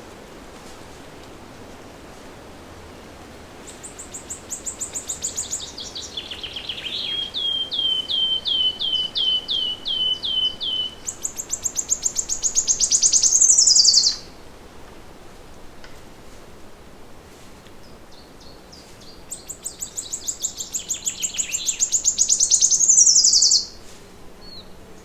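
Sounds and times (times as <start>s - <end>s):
songbird singing: 3.6s - 14.4s, 17.8s - 23.8s, 24.4s - 25.0s.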